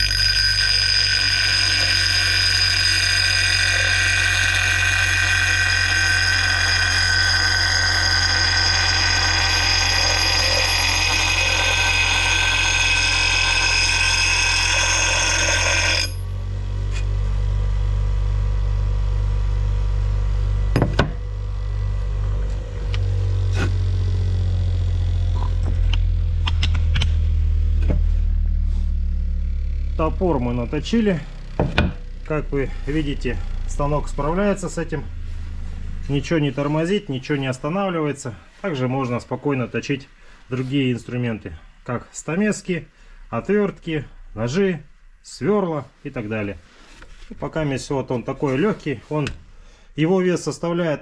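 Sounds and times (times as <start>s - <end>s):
steel grinding on grinder wheel: 0.0s - 16.4s
grinder motor humming: 0.0s - 16.5s.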